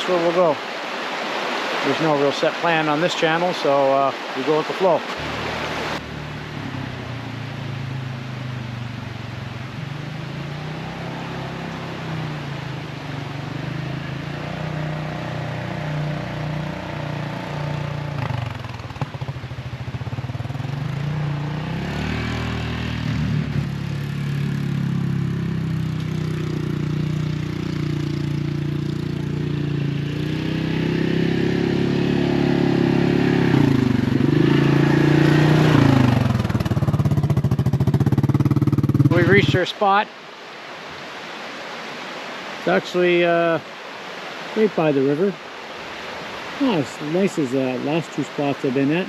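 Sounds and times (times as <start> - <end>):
atv engine running: 5.2 - 39.6.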